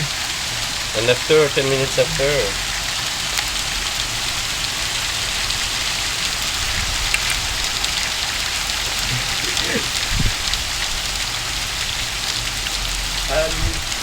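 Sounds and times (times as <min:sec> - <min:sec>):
ice pellets hissing on surfaces: 0:00.0 - 0:14.0
small ice ticks: 0:03.3 - 0:03.8, 0:07.0 - 0:09.2.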